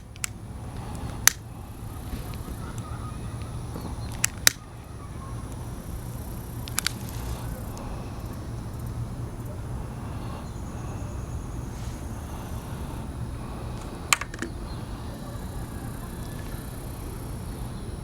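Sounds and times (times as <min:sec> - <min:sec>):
sharp click: 0:00.0 - 0:01.4, 0:06.6 - 0:07.4
low outdoor background rumble: 0:00.0 - 0:18.0.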